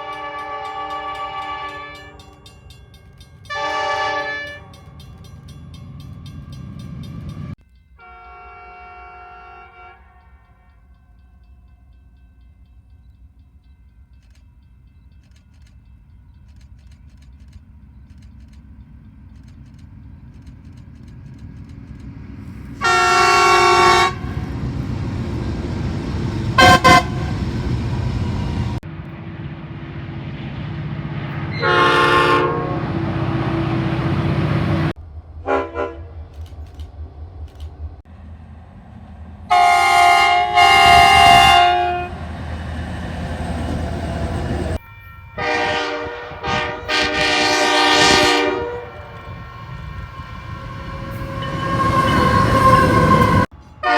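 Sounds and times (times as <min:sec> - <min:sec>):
locomotive horn blasts: 0:00.0 - 0:02.4, 0:03.5 - 0:04.8, 0:08.0 - 0:10.9, 0:22.8 - 0:24.5, 0:26.6 - 0:27.5, 0:31.5 - 0:33.8, 0:35.4 - 0:36.1, 0:39.5 - 0:42.2, 0:45.4 - 0:53.9
train rumble: 0:00.0 - 0:53.9.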